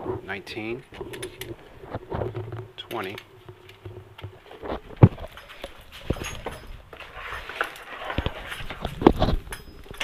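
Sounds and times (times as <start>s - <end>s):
metal tools and bolts clicking: 5.2s - 7.0s, 7.6s - 10.0s.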